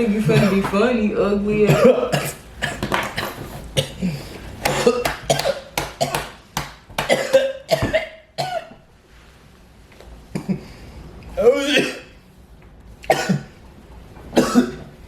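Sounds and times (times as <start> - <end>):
person coughing hard: 1.7 - 6.4, 7.0 - 8.8, 11.4 - 12.1, 13.1 - 13.5, 14.4 - 14.9.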